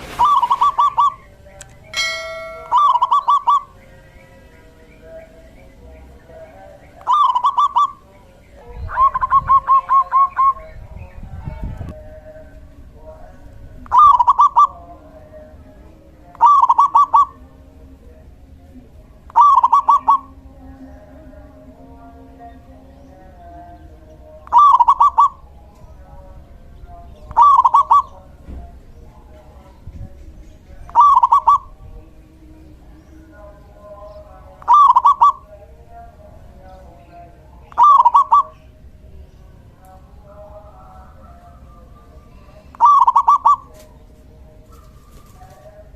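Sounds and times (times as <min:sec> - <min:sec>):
dove cooing: 0:00.1 - 0:01.3, 0:02.0 - 0:03.8, 0:07.0 - 0:08.1, 0:08.9 - 0:10.6, 0:13.8 - 0:14.8, 0:16.4 - 0:17.4, 0:19.3 - 0:20.4, 0:24.5 - 0:25.4, 0:27.3 - 0:28.2, 0:30.9 - 0:31.8, 0:34.7 - 0:35.5, 0:37.7 - 0:38.7, 0:42.7 - 0:43.9.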